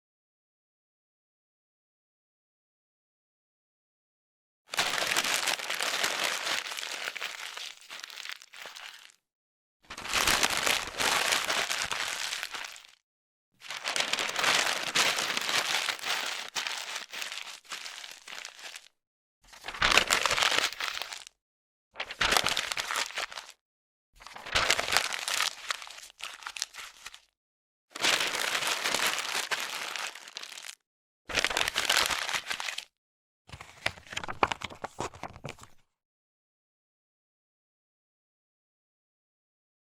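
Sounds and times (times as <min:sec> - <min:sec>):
paper rustling and crinkling: 0:04.7 - 0:09.2, 0:09.9 - 0:13.0, 0:13.6 - 0:18.9, 0:19.5 - 0:21.3, 0:22.0 - 0:23.6, 0:24.2 - 0:27.3, 0:28.0 - 0:32.9, 0:33.5 - 0:35.8.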